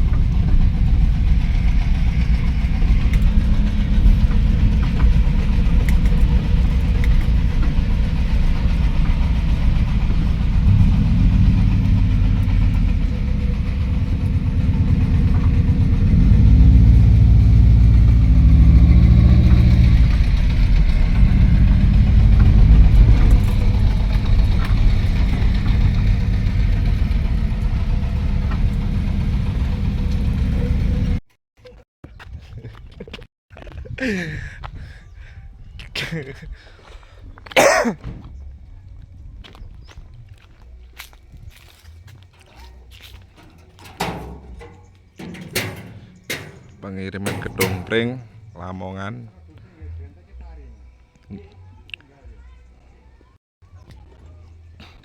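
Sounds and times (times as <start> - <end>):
vehicle engine revs rising and falling: 0.0 - 31.2.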